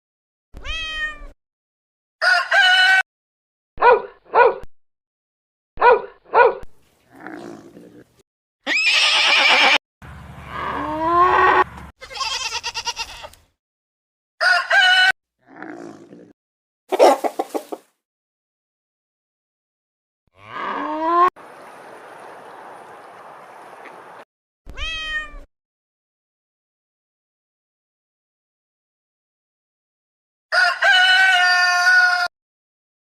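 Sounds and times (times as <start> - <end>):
farm animal calls: 16.9 - 17.8.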